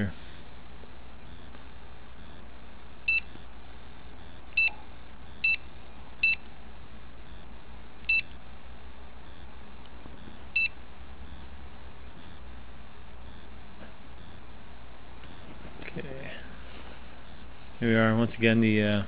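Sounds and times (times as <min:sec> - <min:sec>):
short high-pitched electronic beeps: 0:04.2 - 0:06.4, 0:08.1 - 0:08.3.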